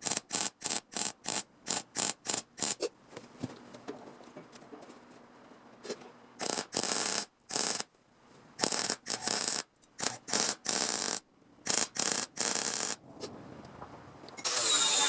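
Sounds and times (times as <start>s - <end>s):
welder crackling hiss: 0.0s - 2.9s, 6.4s - 7.9s, 8.6s - 13.0s.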